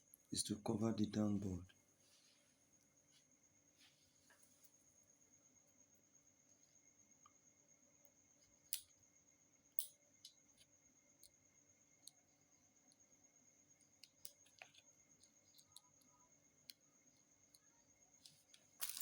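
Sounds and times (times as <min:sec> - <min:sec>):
small plastic parts clicking: 0:14.0 - 0:16.8.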